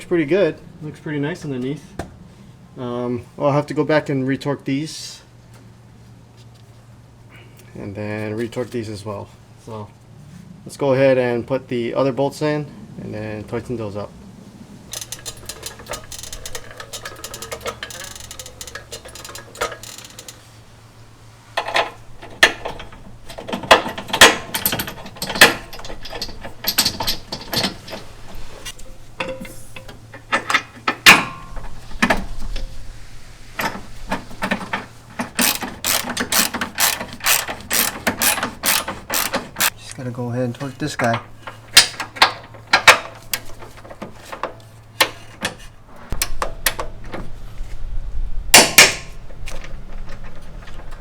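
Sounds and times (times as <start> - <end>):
ratchet wrench clicking: 14.9 - 20.5, 35.2 - 39.8.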